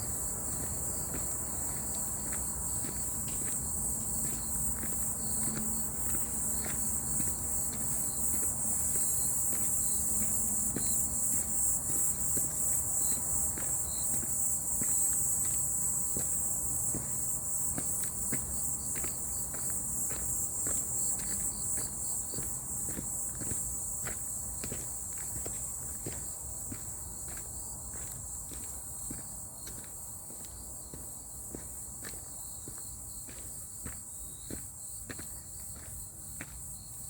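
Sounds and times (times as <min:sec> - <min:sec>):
footsteps on forest path: 0:00.0 - 0:37.0
high-pitched insect chorus: 0:00.0 - 0:37.0.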